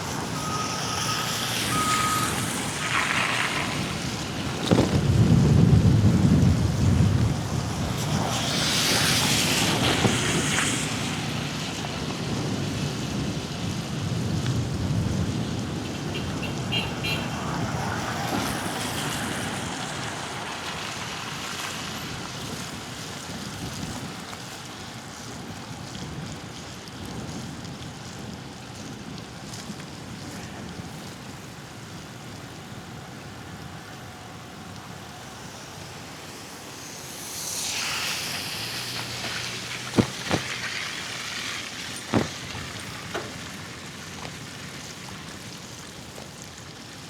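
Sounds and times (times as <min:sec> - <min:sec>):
wind and road noise: 0:00.0 - 0:47.0
sharp knocks: 0:40.0 - 0:40.8, 0:42.1 - 0:43.4.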